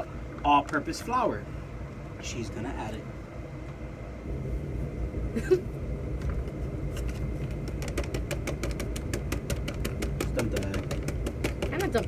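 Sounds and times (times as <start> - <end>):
steady low rumble: 0.0 - 12.0
flour tapping into bowl: 7.6 - 12.0.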